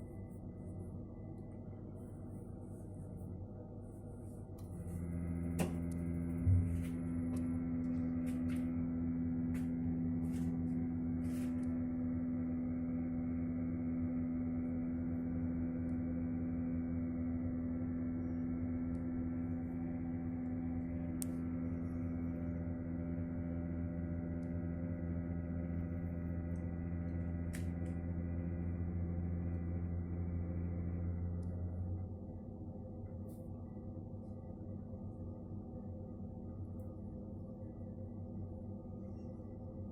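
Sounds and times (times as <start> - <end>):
circulation pump humming: 0.0 - 32.3.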